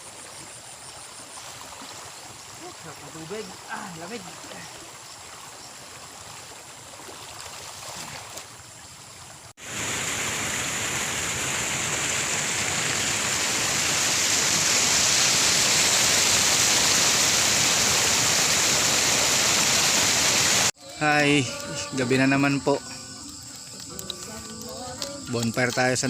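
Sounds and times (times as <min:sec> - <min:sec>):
running water: 0:00.0 - 0:26.0
steady rushing hiss: 0:09.6 - 0:26.0.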